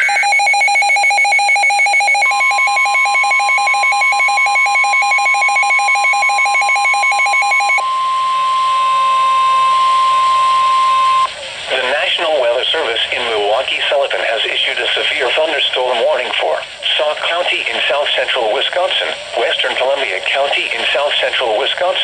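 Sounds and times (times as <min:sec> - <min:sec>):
electronic alert beeping: 0:00.0 - 0:07.8
steady high alarm tone: 0:00.0 - 0:11.3.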